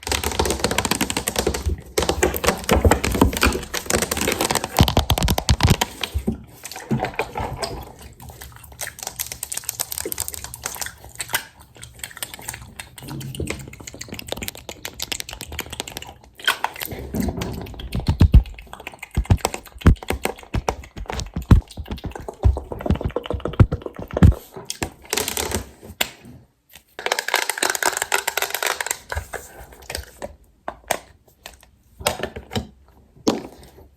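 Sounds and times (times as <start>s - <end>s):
makeup cases tapping and clicking: 0.1s - 6.0s, 17.9s - 24.4s.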